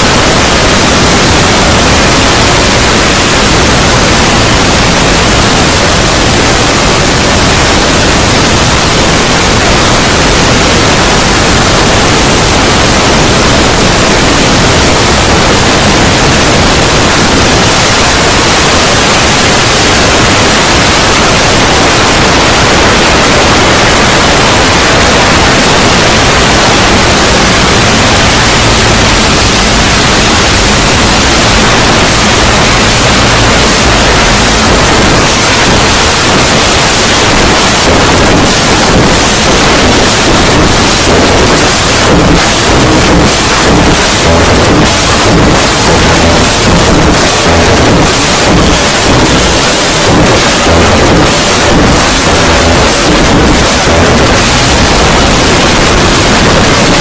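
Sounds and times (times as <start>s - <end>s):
white noise static hiss: 0.0s - 57.0s.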